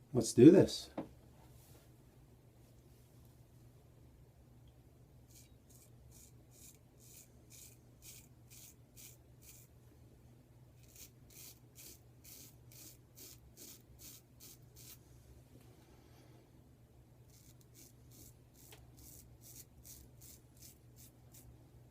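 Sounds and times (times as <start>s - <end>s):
straight razor rasping through stubble: 5.3s - 9.7s, 10.8s - 15.0s, 17.3s - 21.5s.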